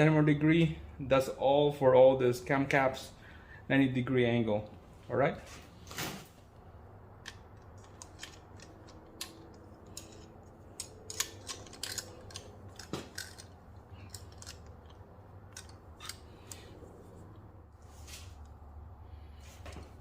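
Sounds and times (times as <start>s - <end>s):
steady low hum: 0.0s - 20.0s
ratchet clicking: 7.3s - 16.7s.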